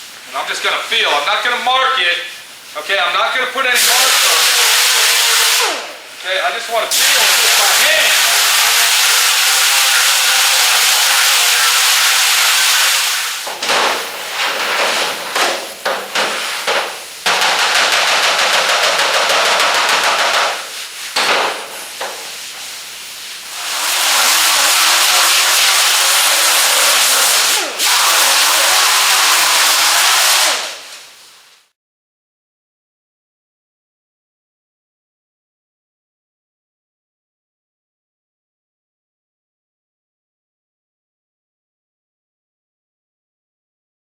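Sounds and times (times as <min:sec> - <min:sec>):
angle grinder sanding metal: 0:07.0 - 0:13.5, 0:23.5 - 0:30.8.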